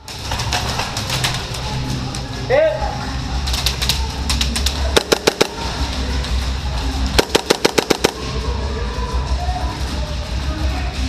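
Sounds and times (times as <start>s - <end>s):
airsoft gun firing burst: 5.0s - 5.8s, 7.2s - 8.4s
music with steady beat: 5.0s - 5.8s, 7.2s - 8.5s.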